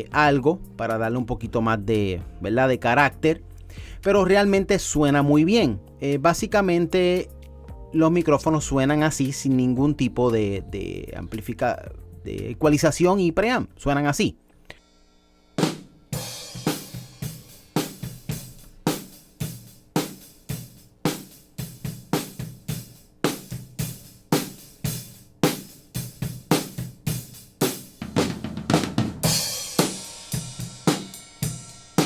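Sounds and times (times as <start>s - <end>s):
drum kit playing a steady beat: 0.0s - 13.2s, 15.5s - 32.0s
cymbal crash: 14.8s - 18.6s, 29.2s - 32.0s.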